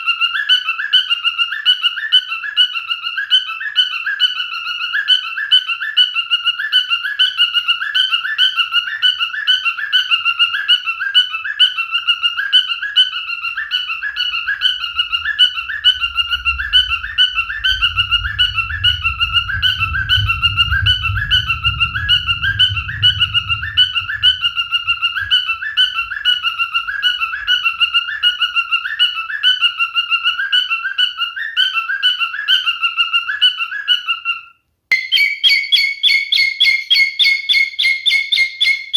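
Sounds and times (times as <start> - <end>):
cockatiel whistling: 0.0 - 38.9
faint low rumble: 13.4 - 29.2.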